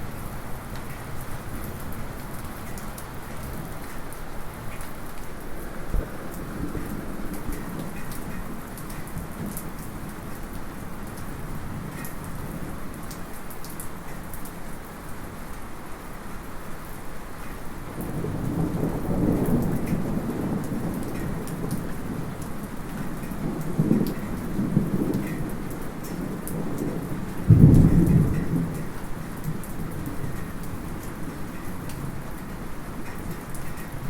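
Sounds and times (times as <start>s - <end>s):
light rain falling: 0.0s - 34.0s
thunder rumbling: 5.4s - 8.7s, 23.4s - 30.6s.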